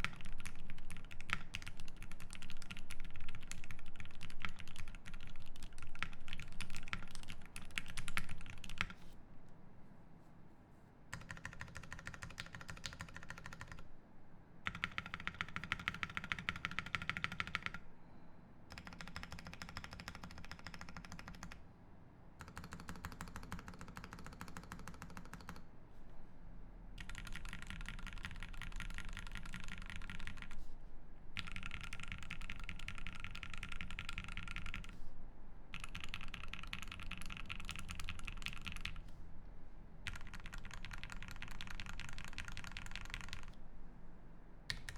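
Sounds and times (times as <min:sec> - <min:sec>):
mechanical keyboard typing: 0:00.0 - 0:09.0, 0:11.1 - 0:13.8, 0:14.6 - 0:17.8, 0:18.7 - 0:21.6, 0:22.4 - 0:25.6, 0:27.0 - 0:30.6, 0:31.4 - 0:35.0, 0:35.7 - 0:39.1, 0:40.0 - 0:43.6, 0:44.7 - 0:44.9.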